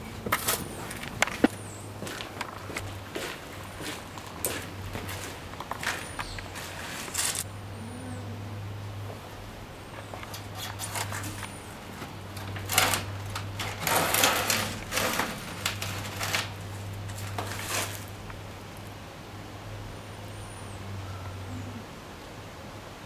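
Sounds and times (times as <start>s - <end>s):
steady low hum: 0.0s - 23.0s
small objects clicking and rustling: 5.5s - 7.5s, 10.0s - 18.4s.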